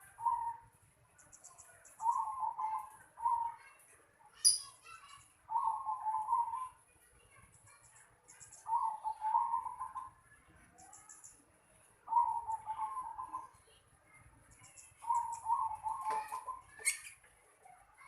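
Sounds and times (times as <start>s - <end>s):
dove cooing: 0.0s - 0.6s, 2.0s - 3.6s, 5.5s - 6.8s, 8.7s - 10.1s, 12.1s - 13.5s, 15.0s - 17.0s
small birds chirping: 0.0s - 18.0s.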